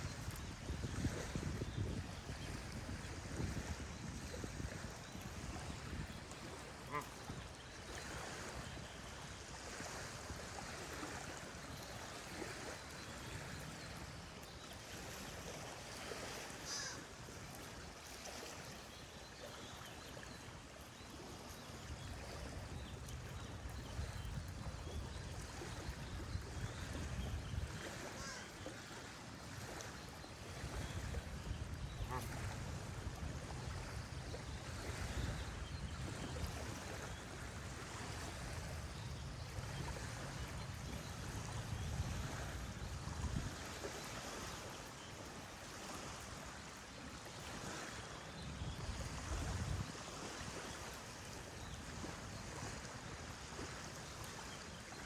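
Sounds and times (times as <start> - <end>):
flowing water: 0.0 - 55.0
geese honking: 6.8 - 7.3, 32.0 - 32.3.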